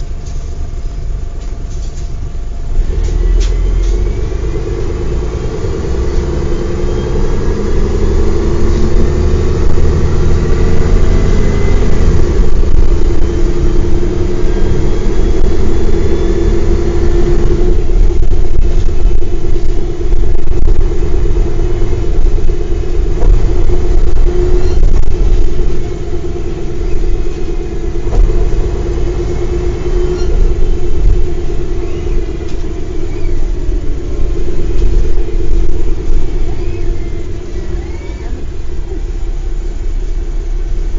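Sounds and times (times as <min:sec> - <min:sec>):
bus diesel engine rumbling: 0:00.0 - 0:40.9.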